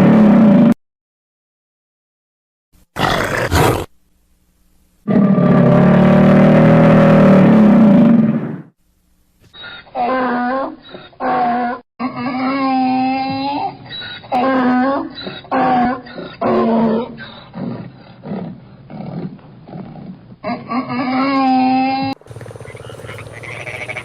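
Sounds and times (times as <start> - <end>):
animal crying: 3.0 - 3.9, 9.5 - 18.4, 20.4 - 24.0.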